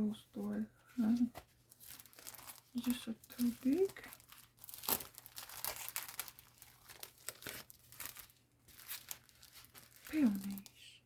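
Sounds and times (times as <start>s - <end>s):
paper napkins rustling: 0.4s - 10.8s.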